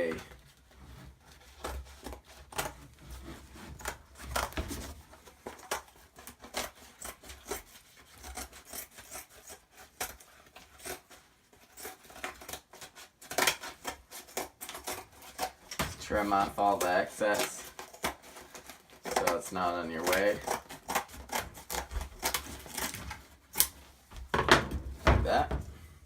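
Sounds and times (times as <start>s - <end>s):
scissors snipping fiberglass: 3.7s - 23.8s.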